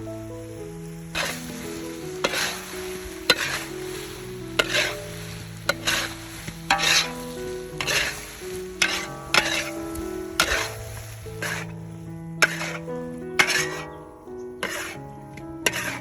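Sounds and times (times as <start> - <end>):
food frying in a pan: 0.0 - 13.9, 14.5 - 16.0
soft background music: 0.0 - 16.0
utensil stirring and scraping: 1.2 - 11.8, 12.4 - 14.0, 14.6 - 16.0
utensil clicking against pan: 4.6 - 5.0, 6.7 - 7.1, 8.8 - 10.8, 13.4 - 13.9, 15.7 - 16.0.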